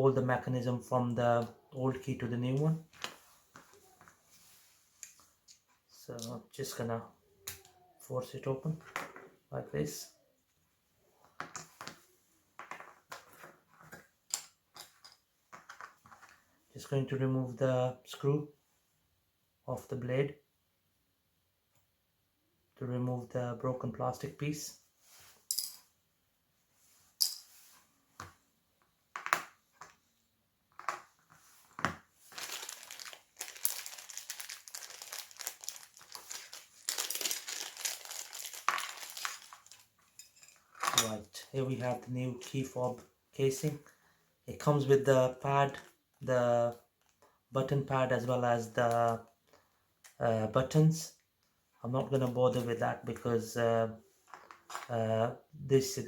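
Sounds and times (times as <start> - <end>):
plastic packaging crinkling: 32.2 - 40.9.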